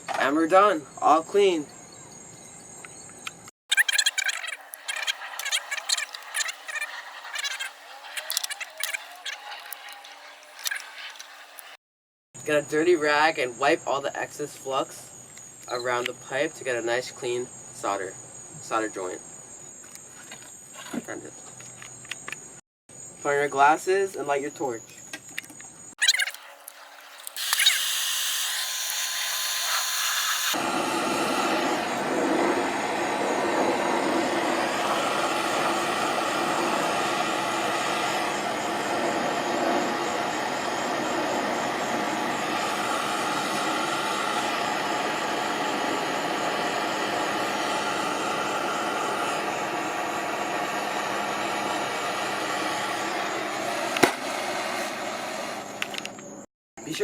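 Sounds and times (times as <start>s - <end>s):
propane torch flame hissing: 4.6s - 11.8s, 26.3s - 56.0s.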